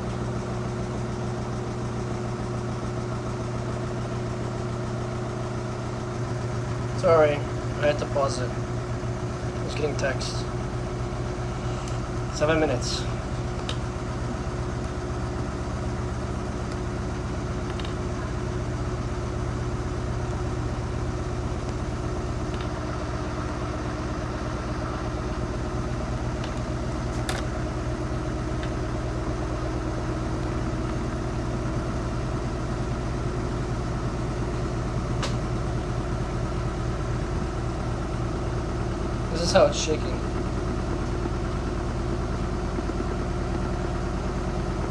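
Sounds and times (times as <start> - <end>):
washing machine drum spinning: 13.0 - 39.3.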